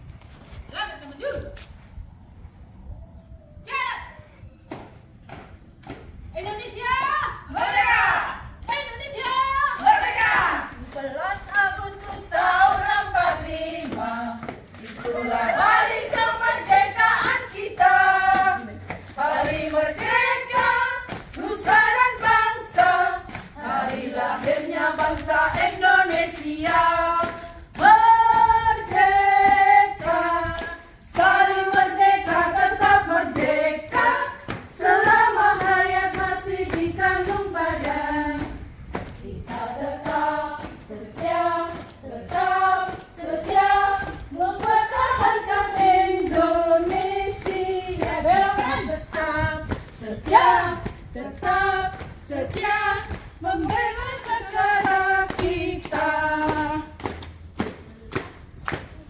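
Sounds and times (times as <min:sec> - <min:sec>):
women singing in unison: 0:07.5 - 0:57.2.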